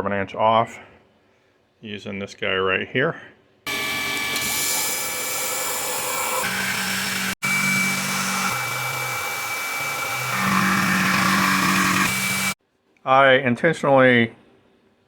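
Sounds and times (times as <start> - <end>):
milling machine cutting metal: 3.7 - 12.6.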